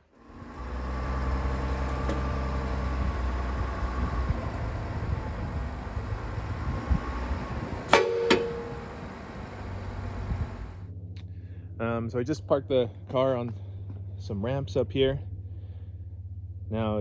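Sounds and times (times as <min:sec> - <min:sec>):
diesel engine humming: 0:00.0 - 0:10.8
sharp metallic clanks: 0:00.3 - 0:10.8.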